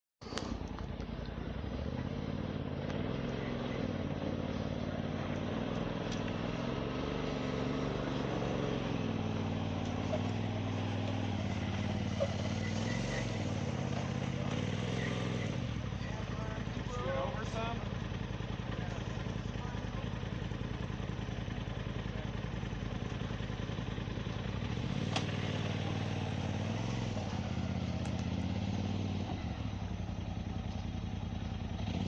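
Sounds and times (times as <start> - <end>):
off-road vehicle engine at low revs: 0.2 - 32.0.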